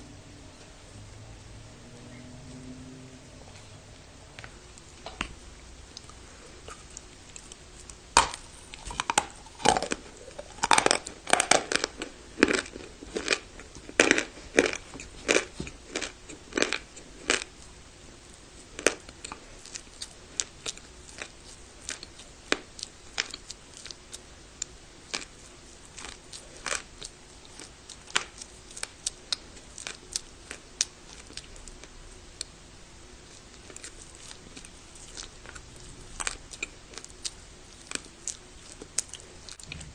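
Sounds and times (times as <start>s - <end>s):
crunching chewing of baked clay: 4.4s - 39.9s.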